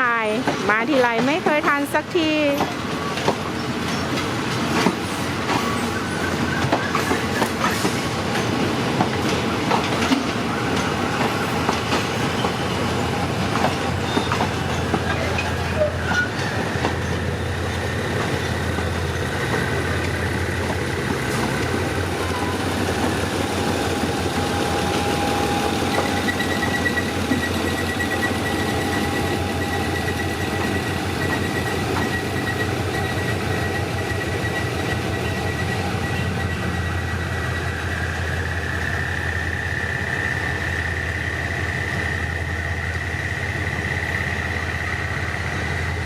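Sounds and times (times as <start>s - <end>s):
train wheels clacking: 0.2s - 41.1s
wheel squeal: 5.0s - 8.6s, 10.0s - 39.6s
locomotive engine hum: 7.2s - 46.0s.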